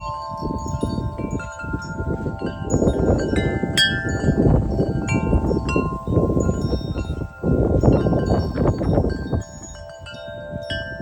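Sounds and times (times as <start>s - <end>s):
blizzard wind buffeting microphone: 0.0s - 11.0s
wind chimes ringing: 0.0s - 11.0s.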